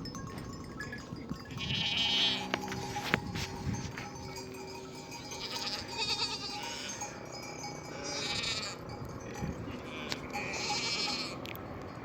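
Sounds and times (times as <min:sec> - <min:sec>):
sheep bleating: 0:01.6 - 0:02.6, 0:05.2 - 0:07.0, 0:07.9 - 0:08.8, 0:09.8 - 0:11.4.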